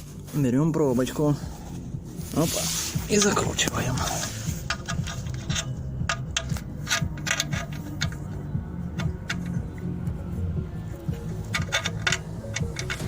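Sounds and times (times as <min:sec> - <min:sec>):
drain plug clicking and rubbing: 0:02.9 - 0:13.0.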